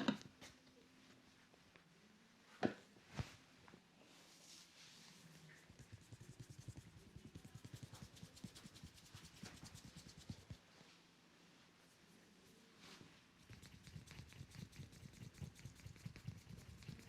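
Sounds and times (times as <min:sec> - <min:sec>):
fingers rubbing scalp and hair: 0:05.0 - 0:10.6, 0:13.4 - 0:17.0.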